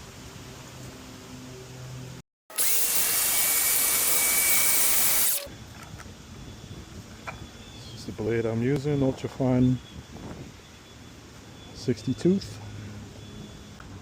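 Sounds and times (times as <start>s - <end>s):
circular saw cutting: 2.5s - 5.5s.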